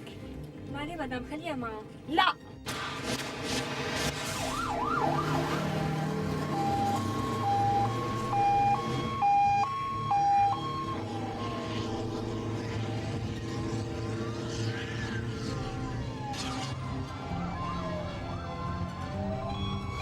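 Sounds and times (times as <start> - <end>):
two-tone siren: 4.4 - 20.0
wailing siren: 4.4 - 20.0.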